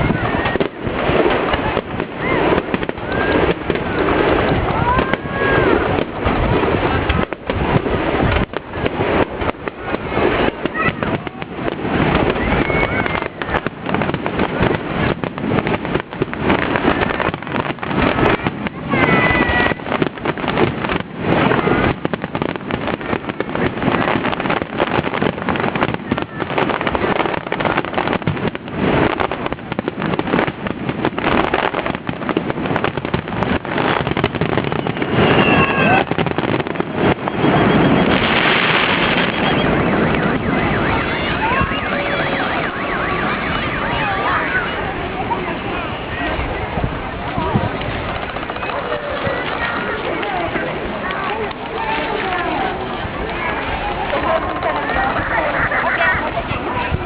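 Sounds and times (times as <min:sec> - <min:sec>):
fireworks crackling: 0:00.0 - 0:57.0
voices of onlookers: 0:00.0 - 0:57.0
siren yelping: 0:37.0 - 0:45.0.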